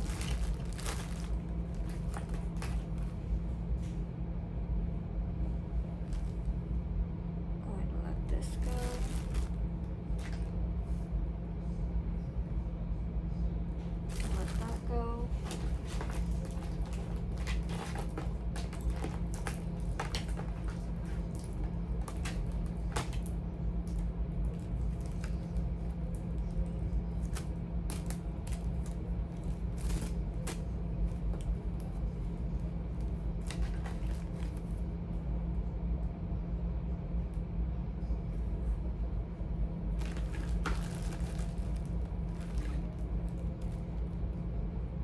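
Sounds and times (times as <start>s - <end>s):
cables and plugs being handled: 0.0s - 3.1s, 8.5s - 10.6s, 14.1s - 32.0s, 33.0s - 34.8s, 40.0s - 43.9s
charging cords clicking and rustling: 0.0s - 3.1s, 8.5s - 10.5s, 14.1s - 31.6s, 40.0s - 43.9s
steady low hum: 0.0s - 45.0s.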